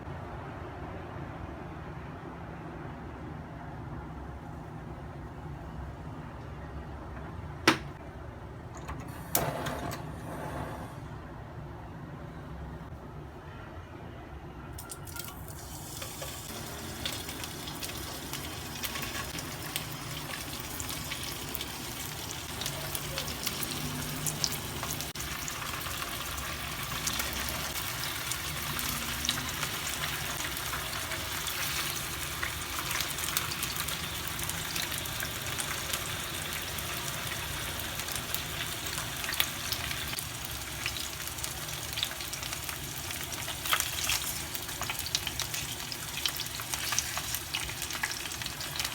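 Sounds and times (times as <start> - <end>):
food frying in oil: 14.8 - 48.9.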